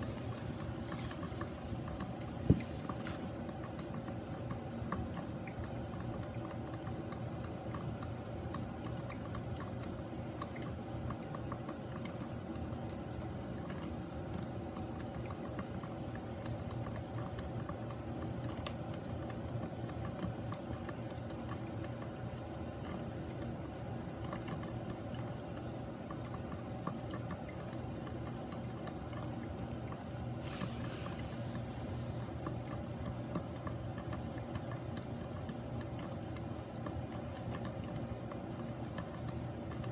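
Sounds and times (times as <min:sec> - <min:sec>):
coffee maker ticking and popping: 0:01.9 - 0:30.1, 0:32.4 - 0:39.9
brief hiss: 0:30.4 - 0:31.5.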